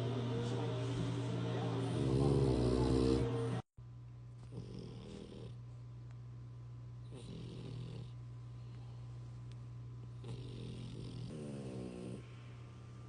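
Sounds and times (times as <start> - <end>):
music: 0.0 - 3.6
steady low hum: 0.0 - 13.0
dog snoring: 1.8 - 3.6, 4.4 - 5.6, 7.0 - 8.2, 10.2 - 12.4.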